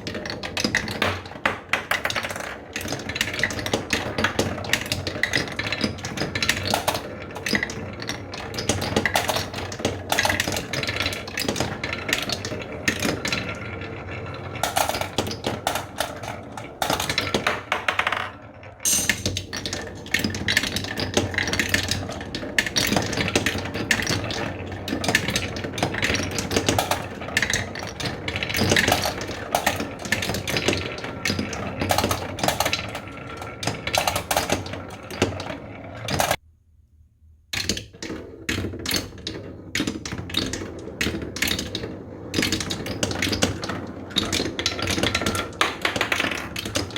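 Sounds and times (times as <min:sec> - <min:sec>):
marbles rolling and clacking: 0:00.0 - 0:36.4, 0:37.6 - 0:46.9.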